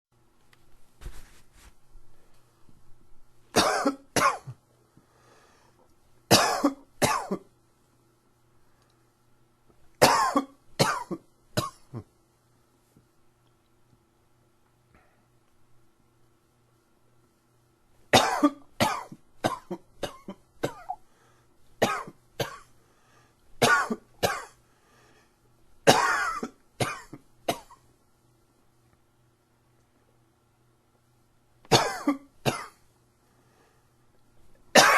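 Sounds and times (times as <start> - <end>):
man coughing: 3.6 - 4.6, 6.3 - 7.4, 10.0 - 12.1, 23.6 - 24.6, 25.9 - 27.8, 31.7 - 32.8
faint breath: 4.9 - 5.9, 21.0 - 21.6, 22.8 - 23.5, 24.6 - 25.5, 33.2 - 34.1.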